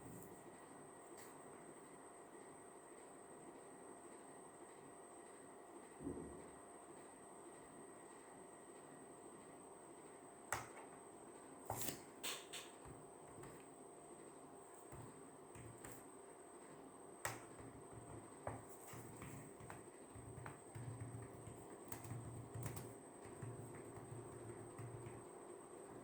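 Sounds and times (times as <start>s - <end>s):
faint fan hum: 0.0s - 26.0s
sharp clicks and taps: 17.2s - 25.2s.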